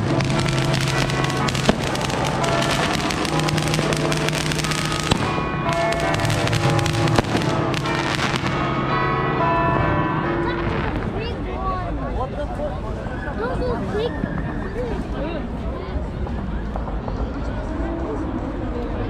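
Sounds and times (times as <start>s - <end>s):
fireworks crackling: 0.0s - 8.7s.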